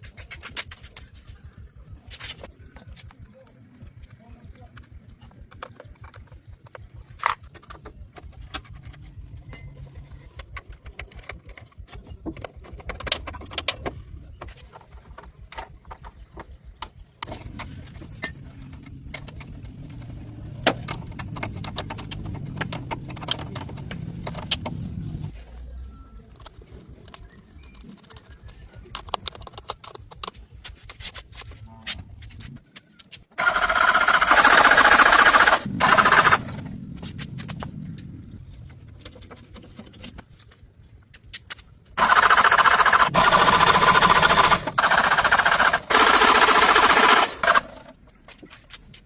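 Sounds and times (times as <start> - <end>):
metallic clinks and knocks: 4.7 - 16.7.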